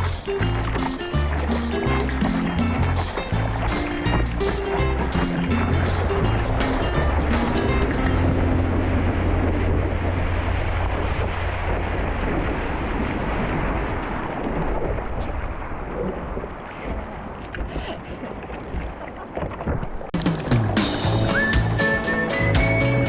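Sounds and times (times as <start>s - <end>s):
rushing surf: 0.0s - 15.8s
heavy low rumble: 0.0s - 16.6s
wind buffeting microphone: 0.0s - 20.1s.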